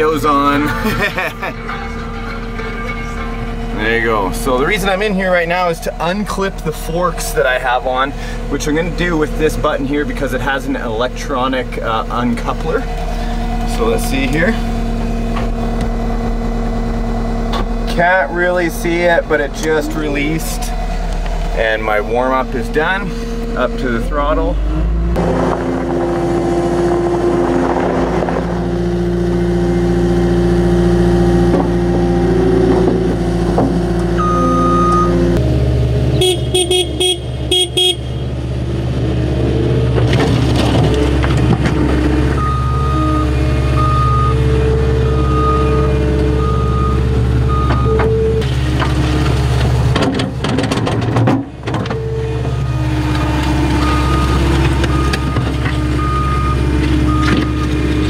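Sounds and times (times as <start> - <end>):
diesel engine running: 0.0 - 58.0
engine clattering: 0.0 - 58.0
backup alarm beeps: 34.2 - 35.4, 42.4 - 48.4, 53.7 - 57.8.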